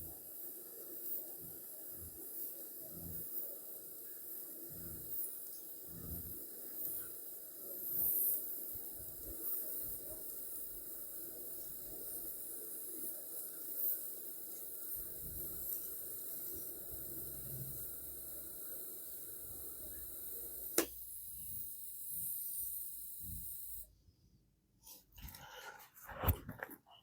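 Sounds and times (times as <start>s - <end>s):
welding arc hissing: 0.0s - 23.9s
sharp click: 20.7s - 21.0s.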